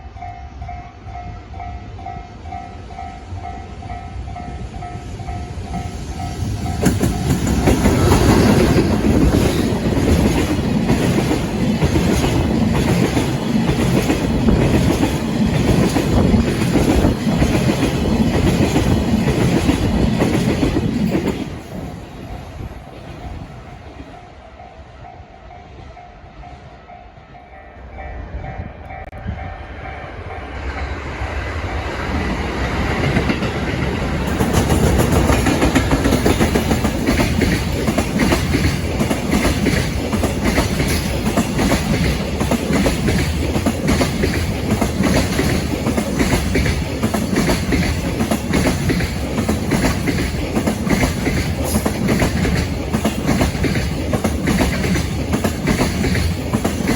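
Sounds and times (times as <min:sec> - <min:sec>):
freight train wheels clattering: 0:04.3 - 0:24.2, 0:31.9 - 0:56.9.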